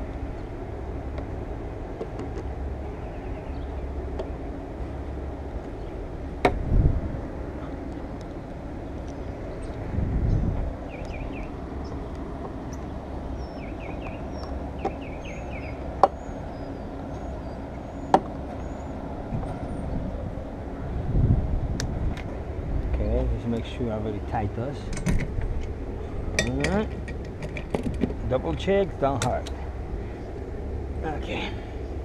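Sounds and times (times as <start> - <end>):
low steady rumble: 0.0 - 32.0
small birds chirping: 2.7 - 6.1, 7.6 - 21.0.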